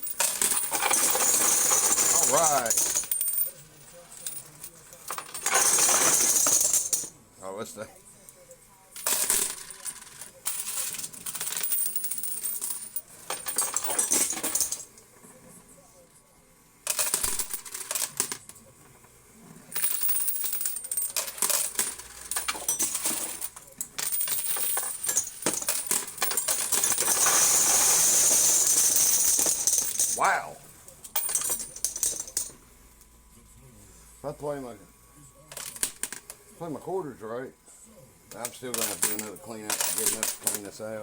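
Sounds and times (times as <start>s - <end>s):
coins clattering and clinking: 0.0s - 7.1s, 9.0s - 15.0s, 16.8s - 18.6s, 19.6s - 30.3s, 31.0s - 32.6s, 35.5s - 36.4s, 38.3s - 40.7s.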